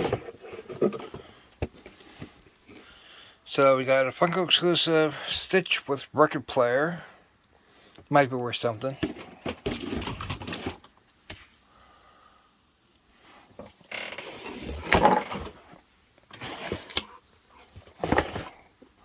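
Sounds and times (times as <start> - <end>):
packaging rustling and scraping: 0.0 - 2.5, 9.0 - 11.0, 14.1 - 18.8.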